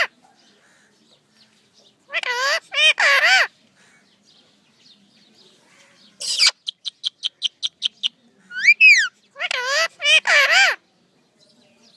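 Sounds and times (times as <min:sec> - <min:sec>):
parrot high chirps: 0:02.1 - 0:03.5, 0:06.2 - 0:10.8.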